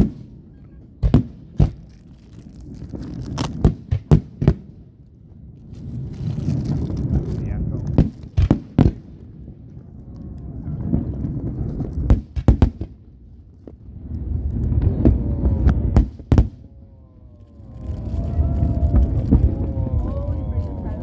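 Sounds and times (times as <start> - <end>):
aerial fireworks bangs: 0.0 - 0.4, 1.0 - 2.0, 3.4 - 4.7, 7.1 - 9.2, 10.9 - 13.0, 14.8 - 16.6
low rumbling echo: 2.6 - 21.0.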